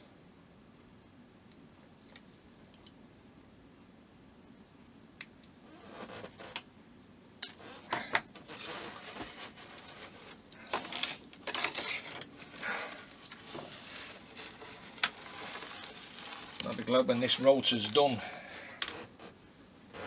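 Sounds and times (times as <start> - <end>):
hands rustling: 8.5 - 18.2.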